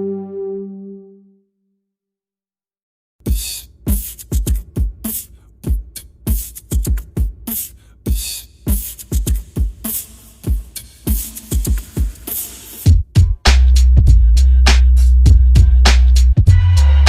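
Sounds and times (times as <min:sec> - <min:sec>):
electronic music: 0:00.0 - 0:01.4
snare and hi-hat hits: 0:03.2 - 0:16.9
kick drum thumps: 0:12.9 - 0:13.4.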